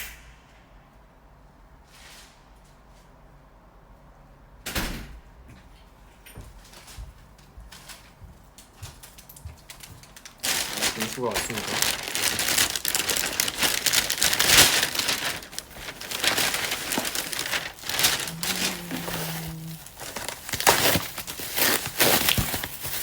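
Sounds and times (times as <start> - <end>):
plastic packaging crinkling: 9.7 - 23.0.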